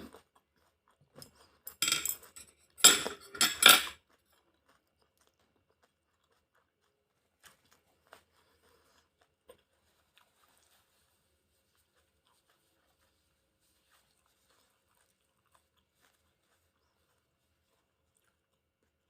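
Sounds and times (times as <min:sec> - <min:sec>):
utensils clinking against a bowl: 0:01.2 - 0:04.0.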